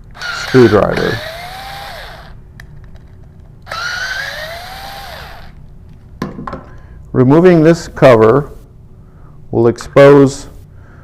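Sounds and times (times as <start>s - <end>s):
electric screwdriver whining: 0.1s - 2.4s, 3.6s - 5.6s.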